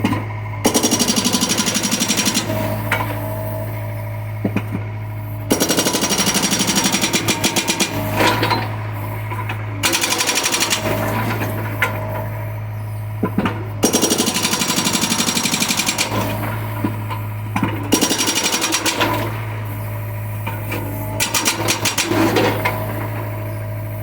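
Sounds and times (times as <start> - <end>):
diesel engine humming: 0.0 - 24.0
hydraulic breaker hammering: 0.0 - 24.0.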